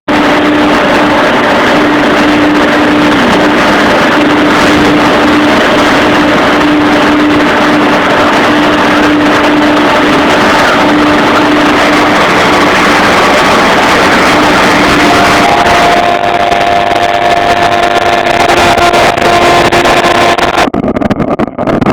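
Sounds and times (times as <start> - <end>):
cnc router running: 0.0 - 21.8
intermittent hum: 0.1 - 21.8.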